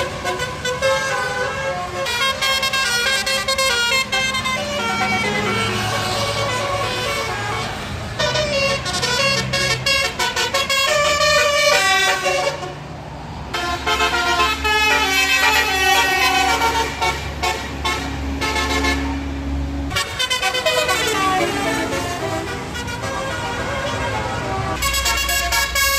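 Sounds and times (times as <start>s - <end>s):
bus musical horn playing a tune: 0.0s - 12.9s, 13.5s - 25.9s
bus engine humming: 0.0s - 25.9s.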